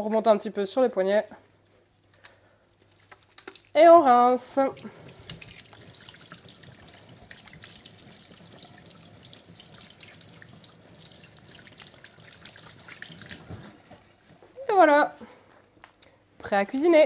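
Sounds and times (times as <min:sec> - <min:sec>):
water running from a tap: 0:04.5 - 0:14.1
water splashing into a sink: 0:04.5 - 0:14.2.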